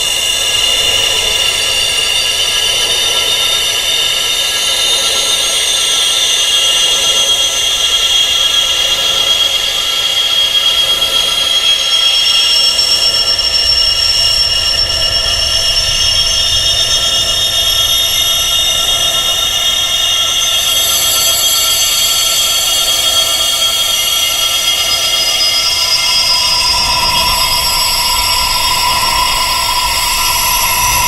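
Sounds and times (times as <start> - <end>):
high-pitched wind chimes ringing: 12.7 - 31.0.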